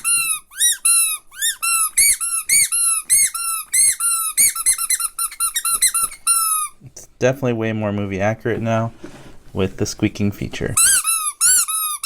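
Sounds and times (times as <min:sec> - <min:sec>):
rubber squeaky toy squeaking: 0:00.0 - 0:06.8, 0:10.8 - 0:12.0.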